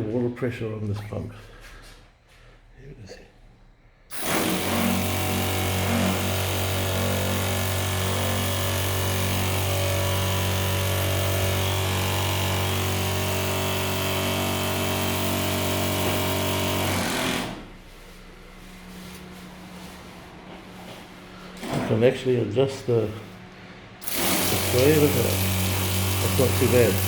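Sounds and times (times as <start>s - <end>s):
electric water pump humming: 4.1s - 17.6s, 24.0s - 27.0s.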